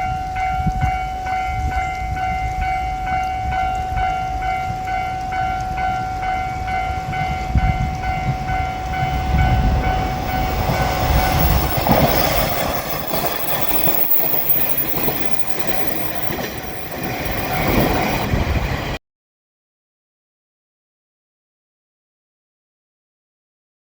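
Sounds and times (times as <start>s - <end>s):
diesel railcar rumbling: 0.0s - 19.0s
level-crossing warning bell: 0.0s - 19.0s
train wheel clatter: 4.0s - 19.0s.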